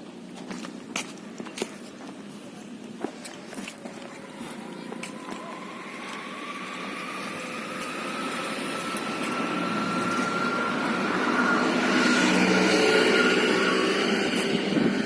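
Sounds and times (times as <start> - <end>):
vehicle engine approaching: 3.8 - 15.0
faint rising whine: 3.9 - 15.0.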